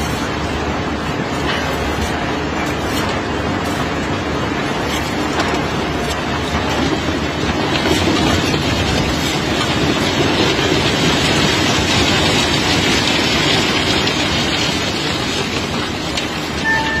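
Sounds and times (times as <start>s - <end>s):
cobblestones rumbling and grating: 4.6s - 16.6s
short beep: 16.6s - 17.0s.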